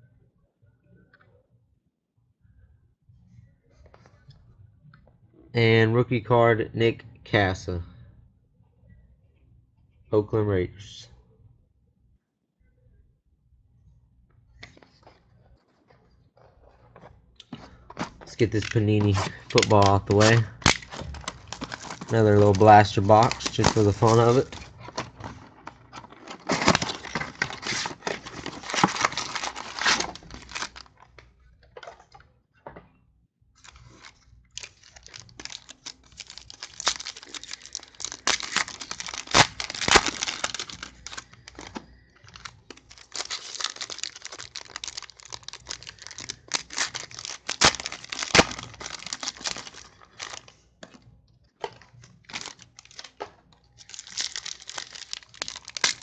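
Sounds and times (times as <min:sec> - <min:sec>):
plastic wrapper crinkling: 0:17.4 - 0:32.0, 0:33.6 - 0:51.0, 0:51.6 - 0:56.0
foil packs tearing: 0:18.0 - 0:31.0, 0:33.6 - 0:50.5, 0:51.7 - 0:53.2, 0:53.8 - 0:56.0.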